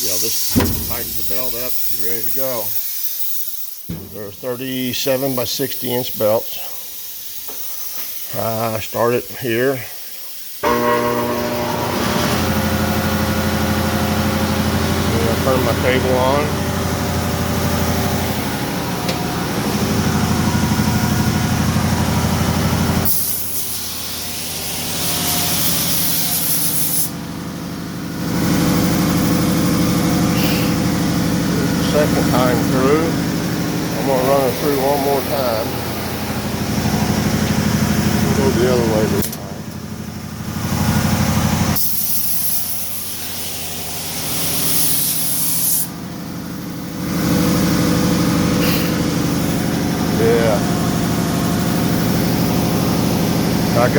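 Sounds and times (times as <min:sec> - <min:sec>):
belt sanding steel sheet hiss: 0:00.0 - 0:10.6, 0:23.0 - 0:27.1, 0:30.3 - 0:30.9
loud hiss: 0:00.0 - 0:12.4, 0:29.4 - 0:40.0
belt sander humming: 0:00.4 - 0:02.4, 0:10.6 - 0:45.1.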